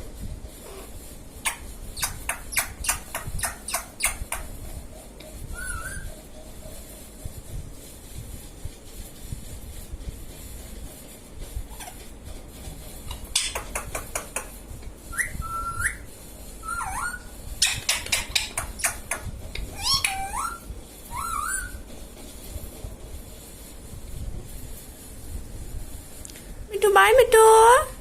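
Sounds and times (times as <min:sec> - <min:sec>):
parrot whistles: 0:05.5 - 0:06.2, 0:15.1 - 0:19.0, 0:19.7 - 0:21.8.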